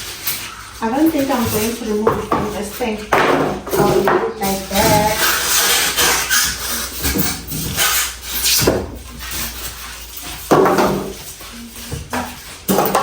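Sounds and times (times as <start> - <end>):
packaging scraping and rubbing: 0.0 - 13.0.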